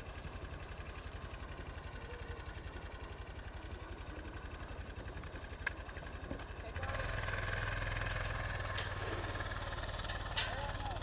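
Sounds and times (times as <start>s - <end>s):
engine idling with low throb: 0.0s - 11.0s.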